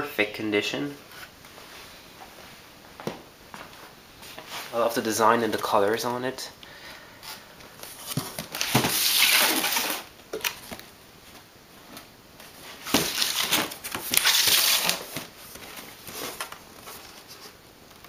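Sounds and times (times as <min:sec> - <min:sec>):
cardboard rustling and scraping: 0:07.3 - 0:17.6.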